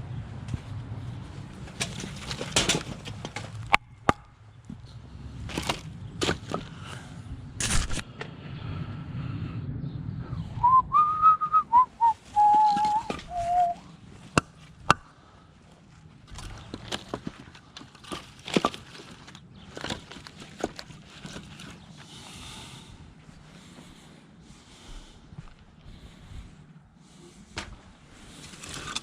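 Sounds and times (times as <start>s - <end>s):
person whistling: 10.6s - 13.8s.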